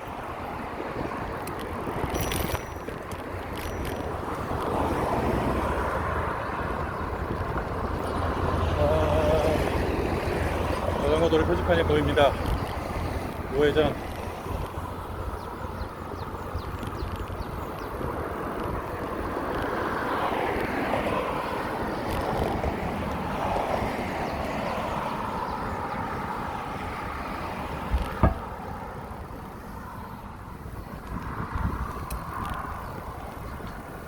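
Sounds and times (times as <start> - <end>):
bicycle tyre noise on pavement: 0.0 - 34.0
wind rushing over microphone: 0.0 - 34.0
sharp knock: 28.2 - 28.4.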